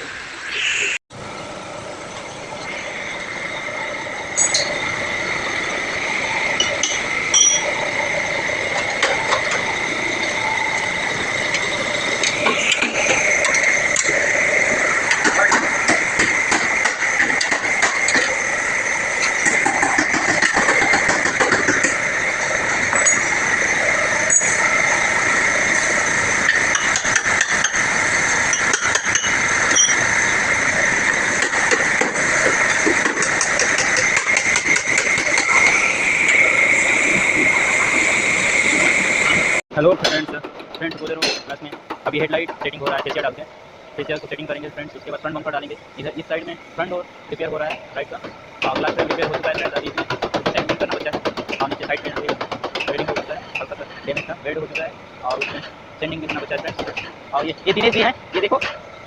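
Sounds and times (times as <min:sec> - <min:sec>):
machine running with high tone: 0:01.5 - 0:43.4, 0:46.0 - 0:58.9
metal knocking and tapping: 0:39.9 - 0:43.4, 0:47.7 - 0:58.8.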